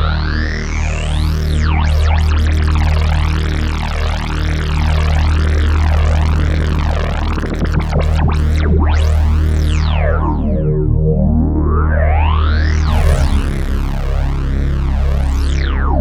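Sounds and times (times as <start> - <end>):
synthesizer bass note: 12.8 - 16.0
synthesizer wah sweeps: 12.9 - 15.4.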